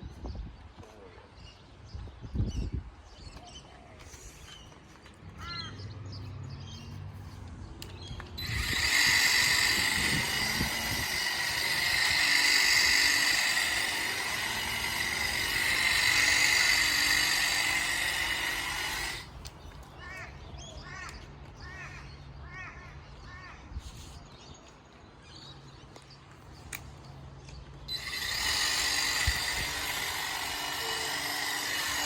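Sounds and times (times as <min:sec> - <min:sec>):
hedge trimmer whine: 0:08.4 - 0:19.3, 0:27.9 - 0:32.0.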